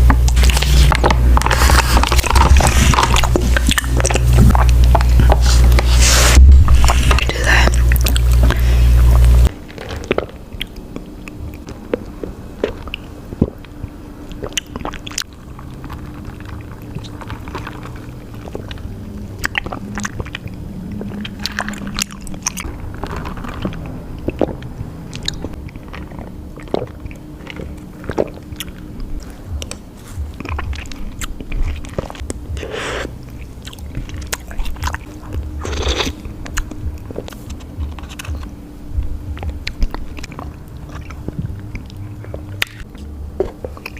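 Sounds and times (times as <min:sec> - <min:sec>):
chewing tapioca pearls: 0:00.0 - 0:43.9
breathy sounds: 0:00.3 - 0:10.1, 0:17.0 - 0:38.4.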